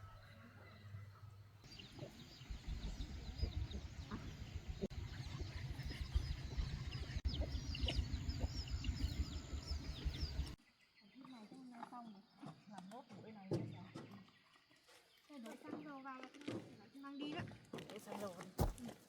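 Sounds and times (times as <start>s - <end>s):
chickens clucking: 0.0s - 10.6s
fast low throbbing: 1.8s - 10.6s.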